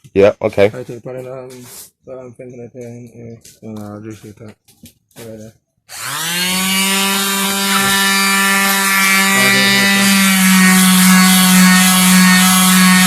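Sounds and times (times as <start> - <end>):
electric sander sanding plastic: 5.9 - 13.0.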